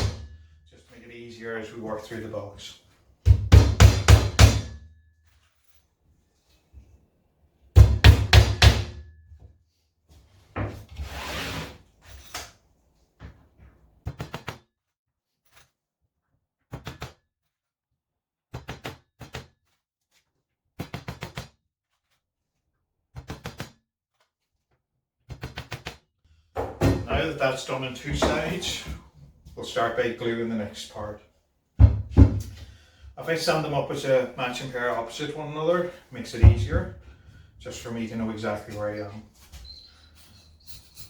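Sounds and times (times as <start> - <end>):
brief scrape: 11.0 - 11.8.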